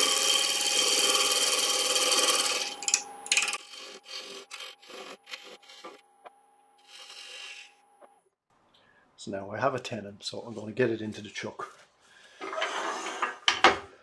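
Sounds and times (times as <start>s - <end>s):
lathe hum: 0.0s - 6.0s
tool cutting wood on lathe: 0.0s - 6.0s, 6.8s - 7.8s.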